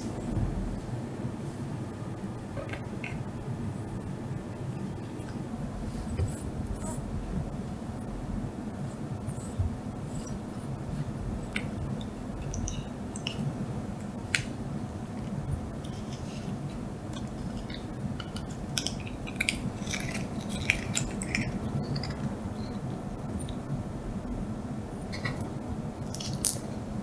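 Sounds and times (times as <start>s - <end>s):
low hum: 0.0s - 26.1s
cat licking and eating: 5.2s - 26.7s.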